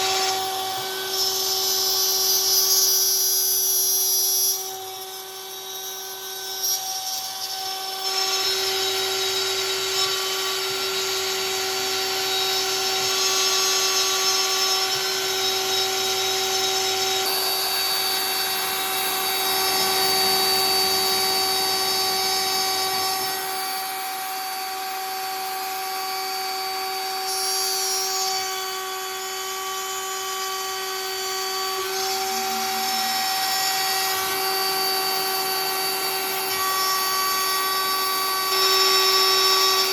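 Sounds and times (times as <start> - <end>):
router spindle whining: 0.0 - 39.9
bit milling wood: 16.8 - 26.2.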